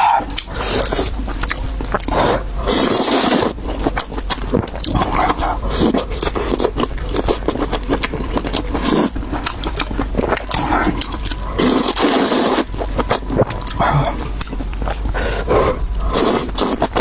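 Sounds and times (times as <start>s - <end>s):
wet chewing with smacking: 0.2s - 17.0s
noodle slurp: 2.6s - 3.6s, 11.6s - 12.7s.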